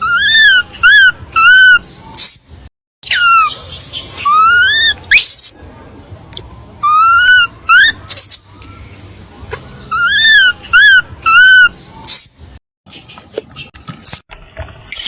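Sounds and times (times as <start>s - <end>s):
monkey high-pitched calls: 0.0s - 2.4s, 3.0s - 5.6s, 6.8s - 8.8s, 9.8s - 12.3s.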